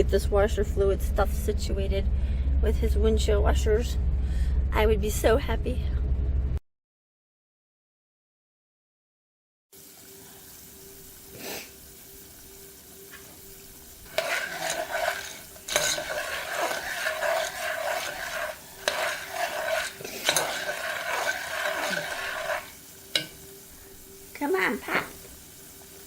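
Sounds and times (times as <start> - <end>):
faint steady hum: 0.0 - 6.6, 9.8 - 26.0
stirring and scraping in a pot: 14.0 - 23.6.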